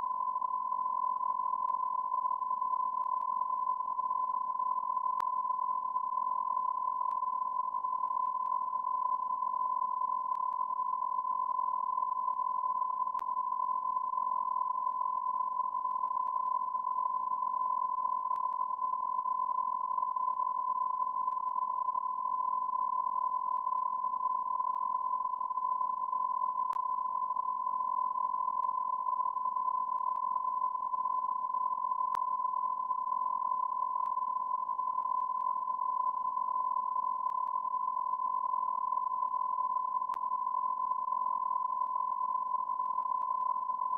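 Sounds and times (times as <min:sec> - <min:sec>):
steady electronic beep tone: 0:00.0 - 0:43.9
faint click: 0:05.2 - 0:05.4, 0:13.1 - 0:13.3, 0:18.3 - 0:18.6, 0:26.7 - 0:26.9, 0:40.1 - 0:40.3
faint clicks: 0:13.1 - 0:13.3.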